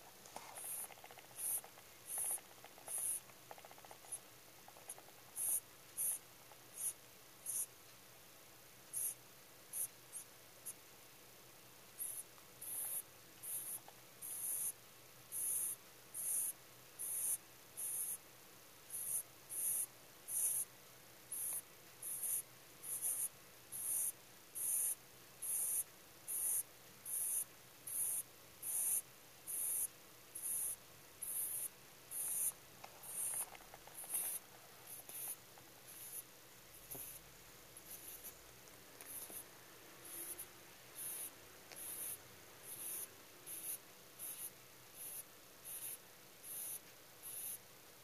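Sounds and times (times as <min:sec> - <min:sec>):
rabbit snoring: 0:00.0 - 0:07.7, 0:21.3 - 0:38.4, 0:39.0 - 0:47.6.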